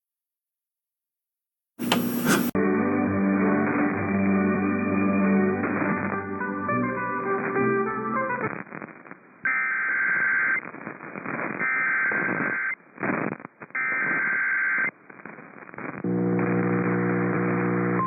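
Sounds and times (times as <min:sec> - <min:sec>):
radio static: 0:01.8 - 0:02.6, 0:08.4 - 0:18.0.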